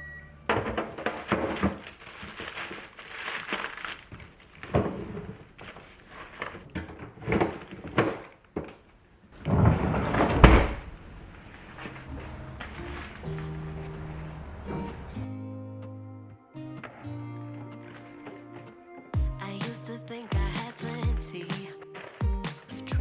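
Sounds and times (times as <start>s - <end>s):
objects knocking and thudding: 0.5s - 2.7s, 4.1s - 10.8s
rustling and scraping: 0.5s - 10.8s, 11.4s - 15.0s, 16.8s - 18.8s, 19.6s - 23.0s.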